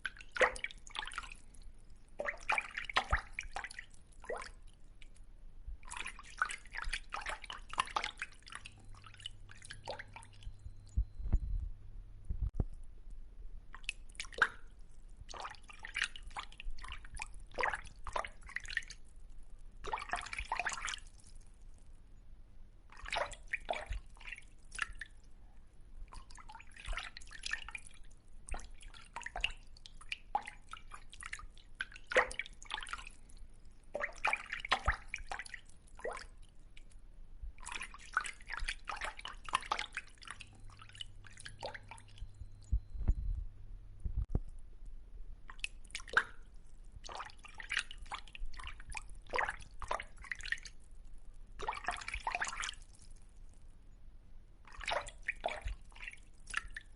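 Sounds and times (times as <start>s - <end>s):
water dripping and splashing: 0.0s - 11.4s, 13.7s - 21.9s, 22.9s - 25.3s, 26.1s - 37.0s, 37.6s - 42.8s, 45.4s - 53.6s, 54.6s - 56.9s
low thumps: 10.9s - 12.7s, 42.6s - 44.5s.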